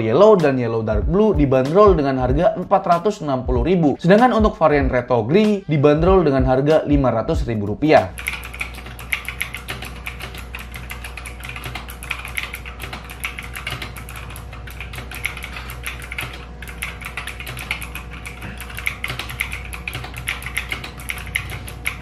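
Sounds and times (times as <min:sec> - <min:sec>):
typing on mechanical keyboard: 0:08.1 - 0:22.0.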